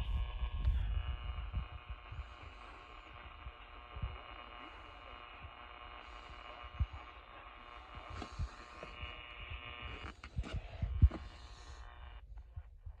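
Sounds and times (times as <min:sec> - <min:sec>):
soft low thumps: 0:00.0 - 0:04.3, 0:08.0 - 0:13.0
steady low hum: 0:00.0 - 0:13.0.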